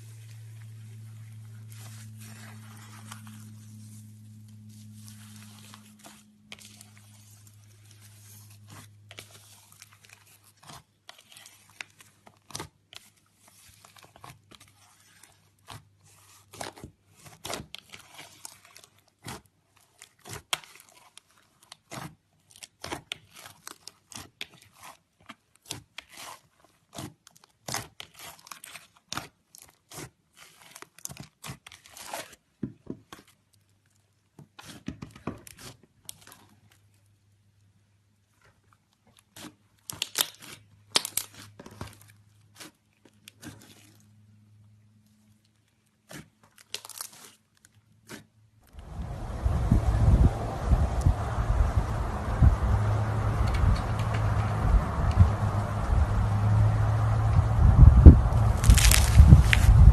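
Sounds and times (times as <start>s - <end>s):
low steady hum: 0.0s - 9.4s, 48.6s - 59.9s
slime squeezed and stretched: 58.0s - 59.9s
slime crackling pops: 58.5s - 59.9s.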